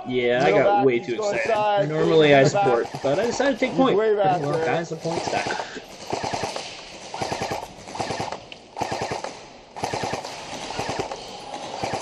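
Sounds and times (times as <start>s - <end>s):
airsoft guns firing bursts: 1.3s - 12.0s.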